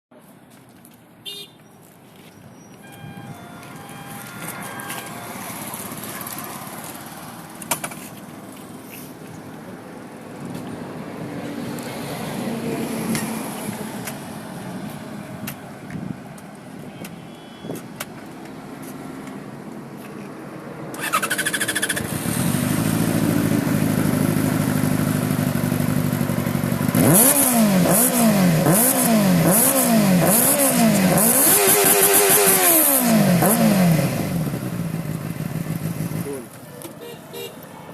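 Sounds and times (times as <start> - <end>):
motorcycle engine idling and revving: 4.0 - 8.0, 21.0 - 37.5.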